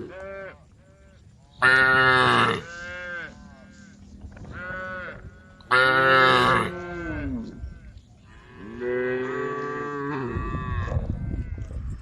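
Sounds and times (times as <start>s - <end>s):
cows mooing: 1.6s - 3.4s, 4.5s - 7.7s, 8.3s - 11.7s.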